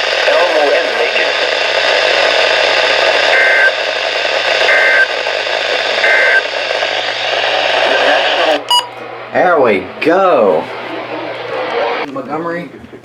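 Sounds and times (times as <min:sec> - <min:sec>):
radio static hiss: 0:00.0 - 0:08.7
two-tone data bursts: 0:08.7 - 0:09.0.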